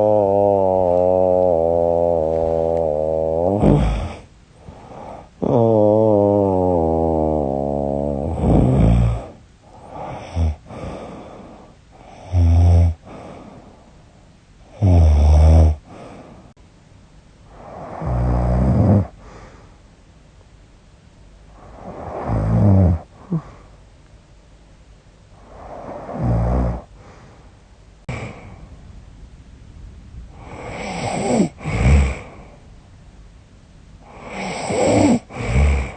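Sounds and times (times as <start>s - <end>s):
woman snoring loudly: 0.0s - 13.5s, 14.7s - 16.3s, 17.5s - 19.2s, 21.6s - 23.5s, 25.4s - 26.9s, 30.4s - 32.4s, 34.1s - 35.9s
quiet breathing: 0.0s - 15.0s, 15.7s - 16.6s, 17.4s - 20.1s, 21.4s - 24.0s, 25.3s - 29.2s, 30.1s - 33.0s, 34.0s - 35.9s.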